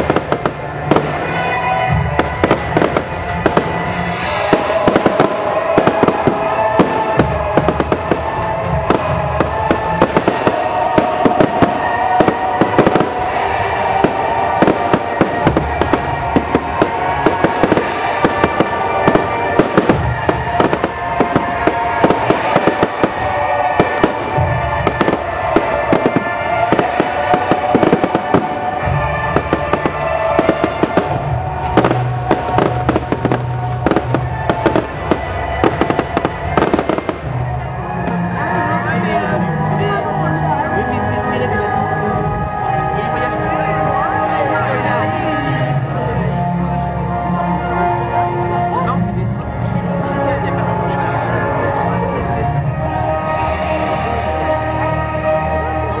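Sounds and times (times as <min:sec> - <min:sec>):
deep fireworks booms: 0:00.0 - 0:41.0
fireworks bangs and crackling: 0:00.0 - 0:46.8
music playing: 0:00.0 - 0:56.0.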